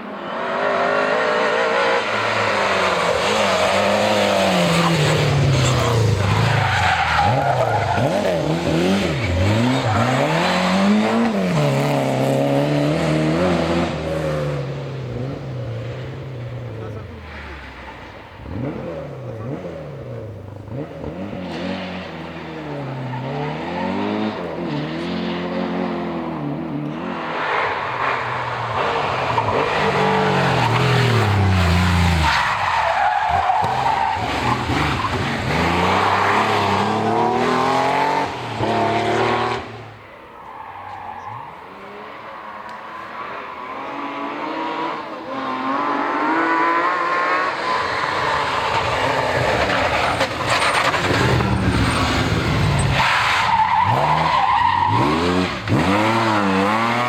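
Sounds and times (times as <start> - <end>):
rally car engine revving: 0.0 - 57.0
tyre squeal: 40.4 - 41.7.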